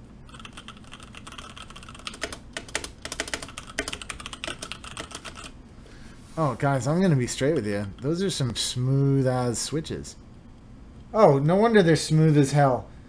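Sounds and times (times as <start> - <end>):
mechanical keyboard typing: 0.3 - 5.6.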